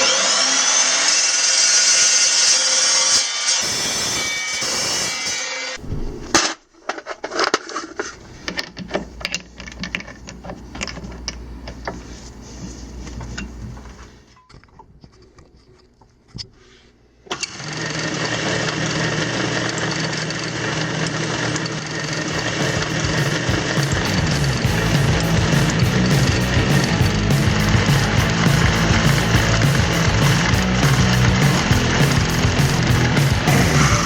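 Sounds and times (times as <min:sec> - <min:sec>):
workshop machine humming: 0:08.0 - 0:14.3, 0:22.0 - 0:34.0
background music: 0:22.3 - 0:34.0.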